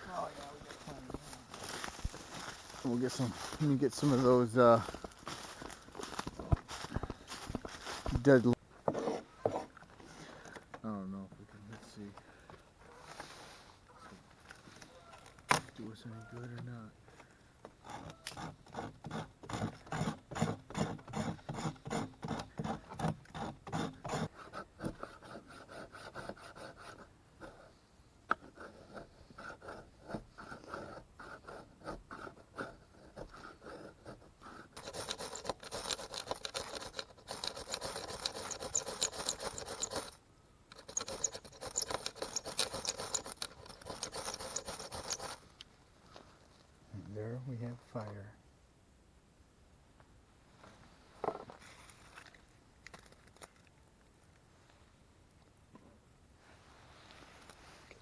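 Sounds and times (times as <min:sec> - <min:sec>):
scraping strokes on tinder: 0:28.5 - 0:45.4.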